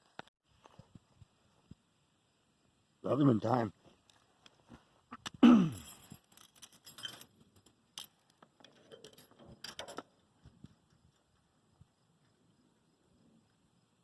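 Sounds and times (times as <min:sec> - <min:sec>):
metal chain and pins jingling: 0:05.7 - 0:10.0.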